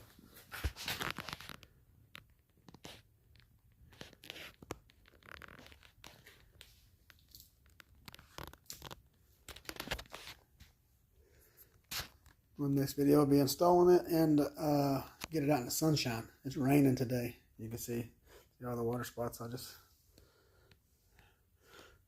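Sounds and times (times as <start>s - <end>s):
faint crunching and rustling: 0.0s - 12.6s.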